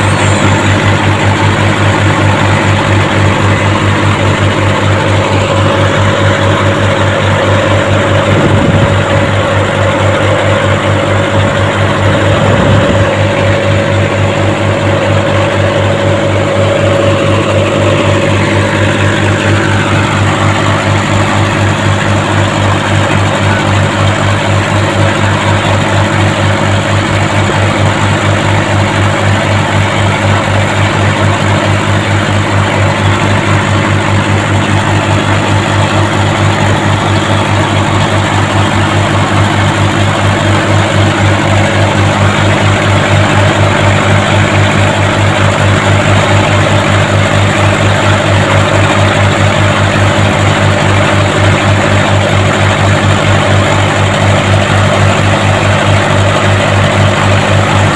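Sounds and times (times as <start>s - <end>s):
diesel boat engine running: 0.0s - 57.9s.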